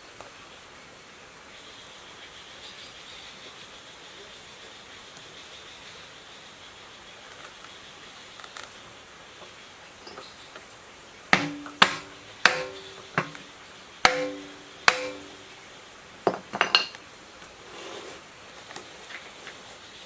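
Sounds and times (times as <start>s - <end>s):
light metallic clinks: 11.4s - 13.5s
hammer blows on metal: 11.4s - 15.6s.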